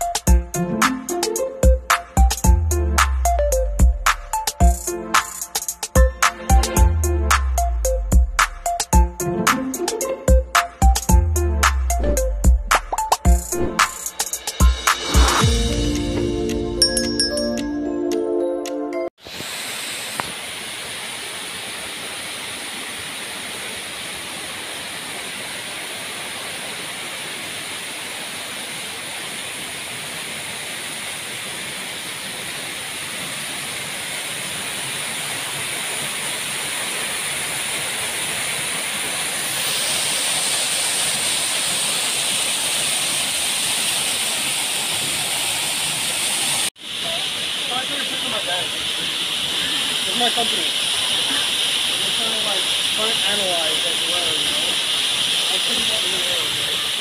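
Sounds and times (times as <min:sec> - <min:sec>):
waterfall rushing: 0:19.2 - 0:57.0.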